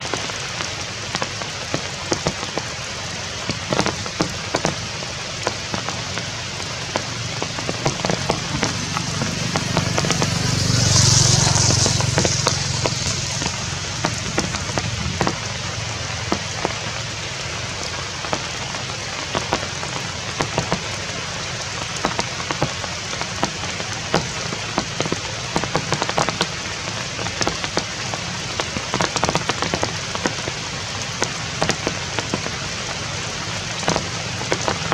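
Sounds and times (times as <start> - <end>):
rain falling: 0.0 - 34.9
rushing swell: 6.7 - 16.3.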